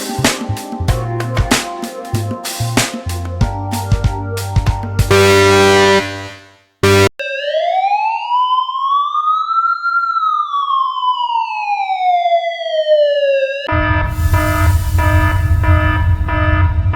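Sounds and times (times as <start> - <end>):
background music: 0.0 - 7.1
electronic siren wail: 5.1 - 16.9.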